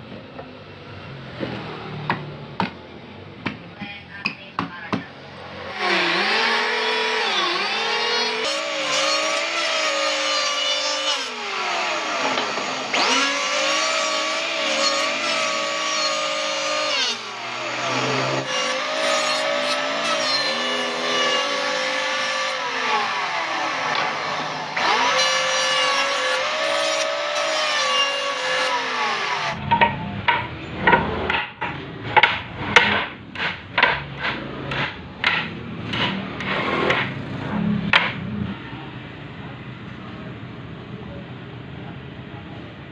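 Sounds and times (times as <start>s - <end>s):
power tool motor whining: 5.4s - 29.6s.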